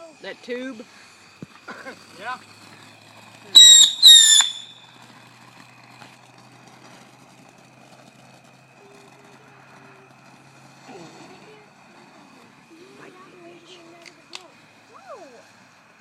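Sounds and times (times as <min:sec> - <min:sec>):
whistling firework shrill whistles: 0:03.5 - 0:04.9.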